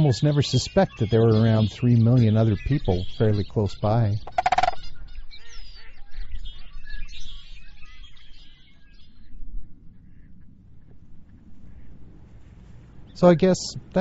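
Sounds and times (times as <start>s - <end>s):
geese honking: 4.2s - 4.9s.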